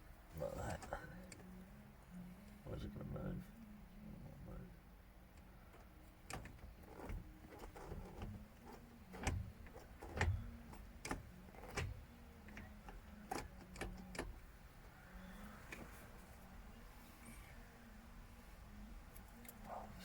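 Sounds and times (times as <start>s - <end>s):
faint low hum: 0.0s - 20.0s
clicks and knocks on gear shifter: 5.4s - 14.5s.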